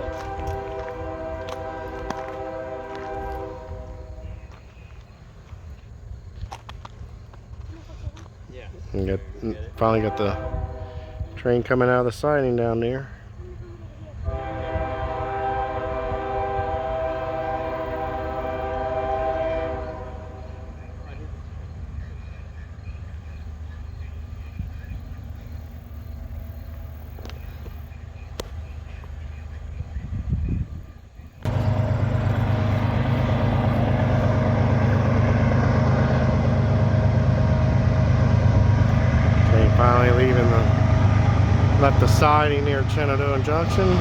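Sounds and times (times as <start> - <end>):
locomotive air horn blast: 0.0 - 4.3, 9.9 - 11.4, 14.2 - 20.9, 31.5 - 44.0
low rumble: 31.4 - 44.0.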